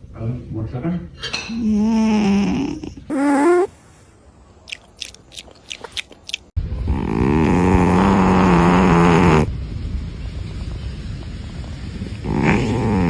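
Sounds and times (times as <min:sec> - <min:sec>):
cat snoring: 0:01.5 - 0:03.7, 0:06.8 - 0:09.5, 0:12.0 - 0:13.0.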